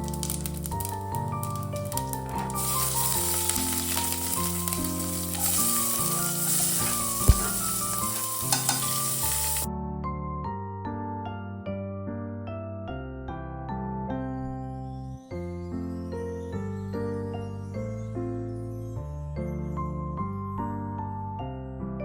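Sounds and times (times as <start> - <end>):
food sizzling in pan: 0.0 - 9.7.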